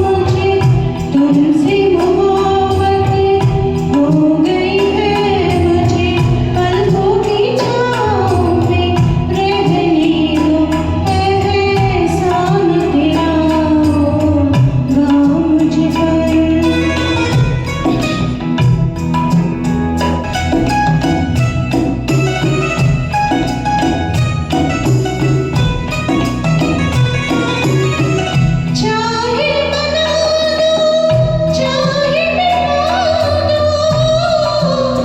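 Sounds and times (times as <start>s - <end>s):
woman singing: 0.0s - 18.4s, 26.0s - 35.0s
percussion beat: 0.0s - 28.8s
karaoke backing track: 0.0s - 35.0s.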